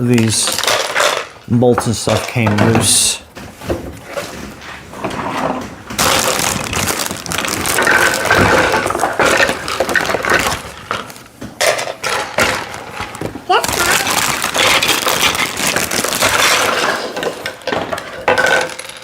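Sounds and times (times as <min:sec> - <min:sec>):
small plastic pieces clattering: 0:00.0 - 0:03.2, 0:05.1 - 0:19.0
plastic packaging crinkling: 0:05.9 - 0:11.3, 0:12.1 - 0:19.0.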